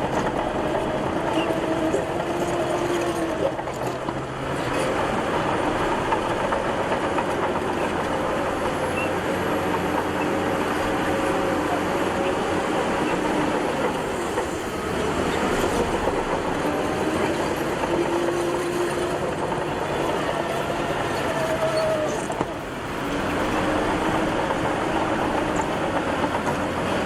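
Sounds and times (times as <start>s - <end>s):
heavy diesel engine under load: 0.0s - 27.0s
squealing tracks: 0.0s - 27.0s.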